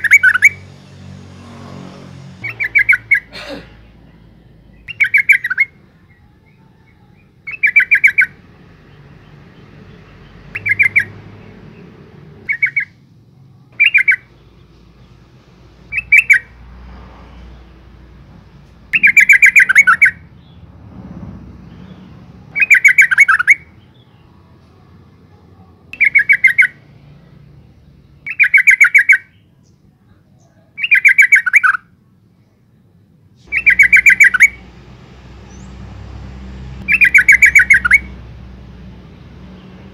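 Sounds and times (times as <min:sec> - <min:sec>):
bird rapid chattering calls: 0:02.4 - 0:03.3, 0:04.8 - 0:05.7, 0:07.5 - 0:08.4, 0:10.4 - 0:11.8, 0:12.4 - 0:13.0, 0:13.8 - 0:14.4, 0:15.9 - 0:16.5, 0:18.9 - 0:20.6, 0:21.7 - 0:24.0, 0:26.0 - 0:26.8, 0:28.3 - 0:29.4, 0:30.8 - 0:31.8, 0:33.5 - 0:34.6, 0:36.8 - 0:38.1.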